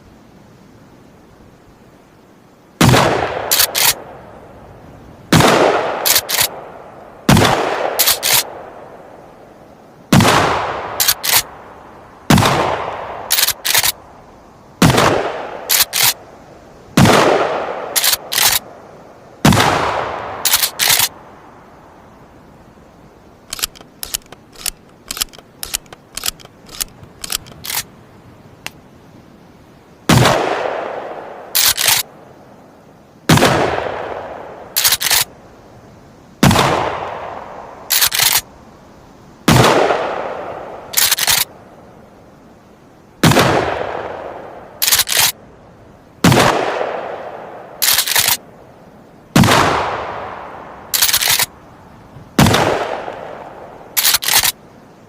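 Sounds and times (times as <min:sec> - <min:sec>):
shotgun shots echoing: 0:02.8 - 0:04.0, 0:05.3 - 0:06.6, 0:07.3 - 0:08.5, 0:12.3 - 0:14.0, 0:14.8 - 0:16.2, 0:17.0 - 0:18.6, 0:30.1 - 0:32.0, 0:36.4 - 0:38.4, 0:39.5 - 0:41.5, 0:43.2 - 0:45.3, 0:46.2 - 0:48.4, 0:49.4 - 0:50.4, 0:52.4 - 0:53.4
quick mechanical clicks: 0:03.5 - 0:04.0, 0:06.0 - 0:06.5, 0:08.0 - 0:08.5, 0:11.0 - 0:11.5, 0:13.3 - 0:14.0, 0:15.7 - 0:16.2, 0:18.0 - 0:18.6, 0:20.4 - 0:21.1, 0:23.5 - 0:27.9, 0:31.6 - 0:32.0, 0:34.8 - 0:35.3, 0:37.9 - 0:38.5, 0:41.0 - 0:41.5, 0:44.8 - 0:45.4, 0:47.8 - 0:48.4, 0:51.0 - 0:51.5, 0:54.0 - 0:54.6
shotgun pump racking clack: 0:03.5 - 0:04.0, 0:06.1 - 0:06.5, 0:08.0 - 0:08.4, 0:11.0 - 0:11.4, 0:13.3 - 0:14.0, 0:15.7 - 0:16.2, 0:18.0 - 0:18.6, 0:20.5 - 0:21.1, 0:23.5 - 0:27.9, 0:31.6 - 0:32.0, 0:34.8 - 0:35.2, 0:37.9 - 0:38.4, 0:41.0 - 0:41.5, 0:44.8 - 0:45.3, 0:47.8 - 0:48.4, 0:51.0 - 0:51.5, 0:54.0 - 0:54.6.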